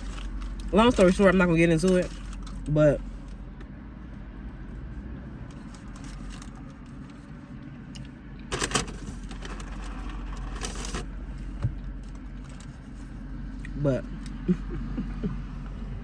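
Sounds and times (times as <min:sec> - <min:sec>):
crinkling rustles: 0:00.0 - 0:03.4, 0:05.5 - 0:07.5, 0:08.5 - 0:13.1
low background hum: 0:00.0 - 0:16.0.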